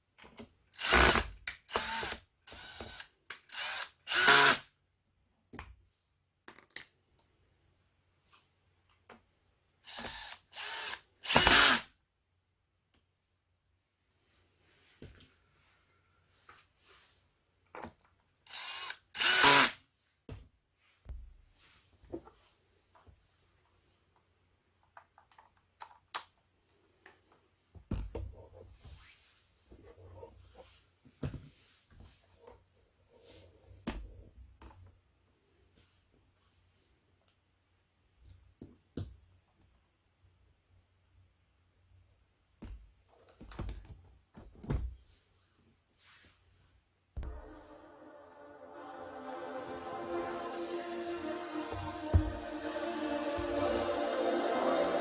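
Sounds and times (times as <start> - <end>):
electric screwdriver whirring: 0.8 - 4.6, 9.9 - 11.9, 18.5 - 19.8.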